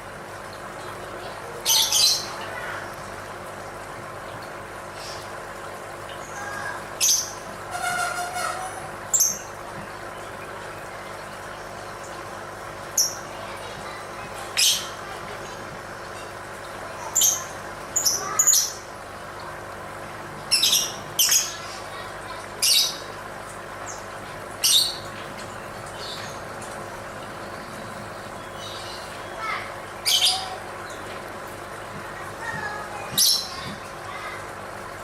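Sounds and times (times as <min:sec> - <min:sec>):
bird squawking: 0:06.4 - 0:09.4.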